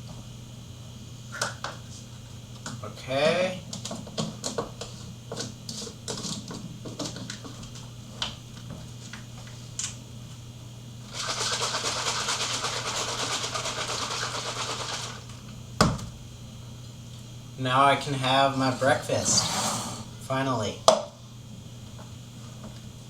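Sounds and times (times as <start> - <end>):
liquid sloshing in a shaken pitcher: 11.1 - 15.2.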